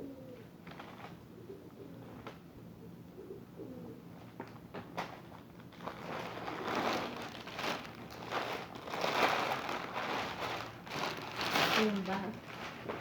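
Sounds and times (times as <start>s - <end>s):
plastic packaging crinkling: 5.0s - 13.0s.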